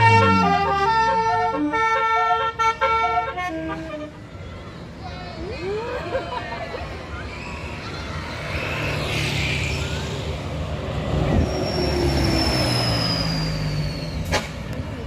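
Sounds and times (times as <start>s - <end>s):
large vehicle rumbling: 0.0s - 15.0s
high squeal falling in pitch: 11.4s - 14.3s.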